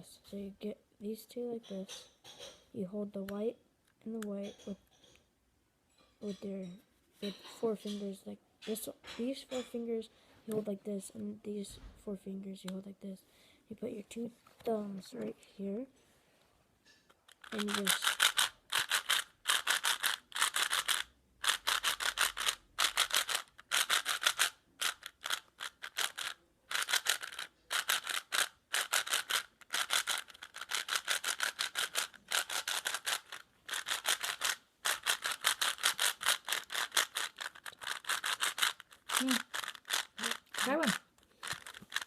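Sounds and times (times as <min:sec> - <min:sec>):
puzzle cube clicking: 0:17.3 - 0:42.0.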